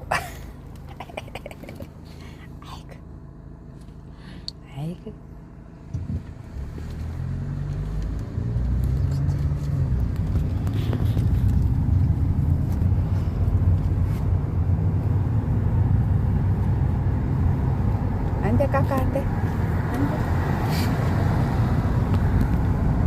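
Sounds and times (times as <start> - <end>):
vehicle engine and road rumble: 0.0 - 23.0.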